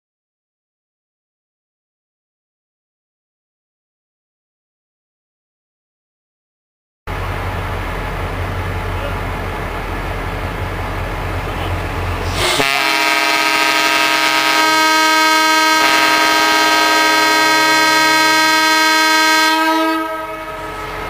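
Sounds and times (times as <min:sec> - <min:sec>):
low steady rumble: 0:07.1 - 0:12.6, 0:19.7 - 0:21.0
multi-tone air horn blasting: 0:12.3 - 0:21.0.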